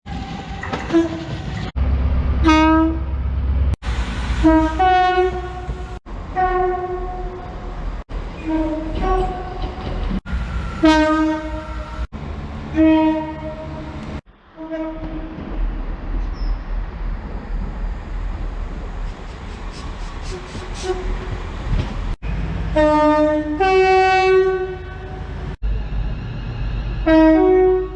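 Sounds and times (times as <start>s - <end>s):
train rumbling: 0.0s - 27.9s
short train horn blasts: 0.8s - 1.4s, 2.4s - 3.1s, 4.4s - 7.4s, 8.4s - 9.6s, 10.6s - 12.1s, 12.8s - 14.0s, 14.6s - 15.3s, 22.8s - 25.4s, 27.0s - 27.9s.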